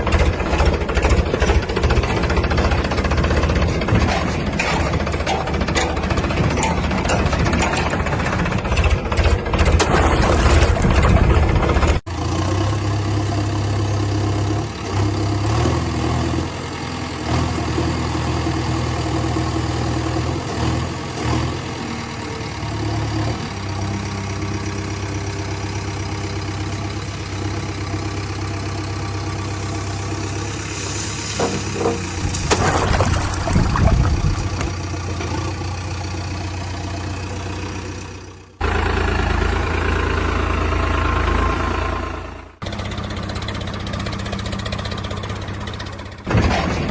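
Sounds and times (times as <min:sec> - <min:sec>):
loud rough clattering: 0:00.0 - 0:12.0, 0:30.4 - 0:35.8, 0:46.2 - 0:46.9
diesel engine hum: 0:00.0 - 0:46.9.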